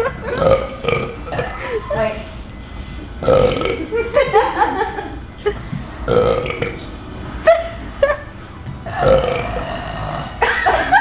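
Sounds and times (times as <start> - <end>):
person burping: 0.4 - 1.6, 3.2 - 3.8, 6.1 - 6.8, 8.9 - 10.4.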